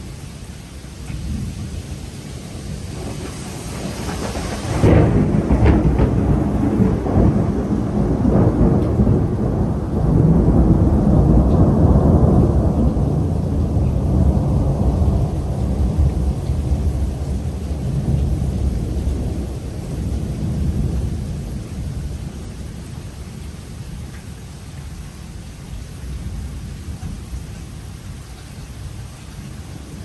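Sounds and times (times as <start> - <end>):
steady rain: 0.0 - 30.0
thunder rumbling: 1.0 - 24.2.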